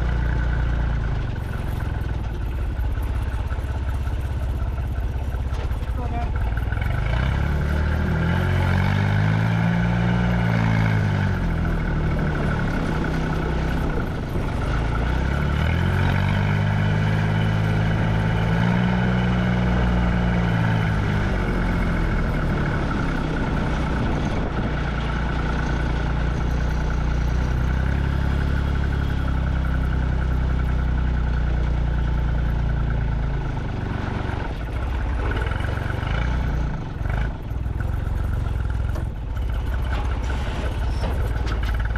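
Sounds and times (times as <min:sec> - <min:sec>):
truck engine driving: 0:00.0 - 0:41.9.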